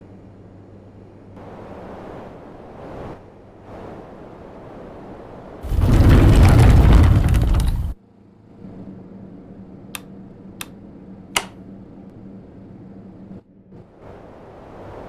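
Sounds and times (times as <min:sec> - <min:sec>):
loud rush of noise: 0:05.6 - 0:08.0.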